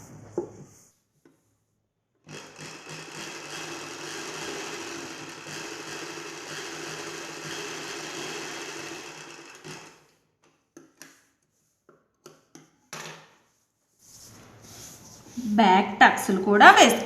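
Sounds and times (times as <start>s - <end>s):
sewing machine running: 2.3s - 10.1s.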